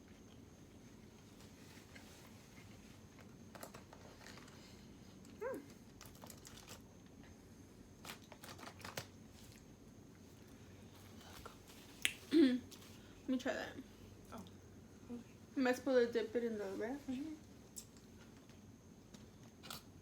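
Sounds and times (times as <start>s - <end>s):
takeout packaging crinkling: 8.0s - 9.7s.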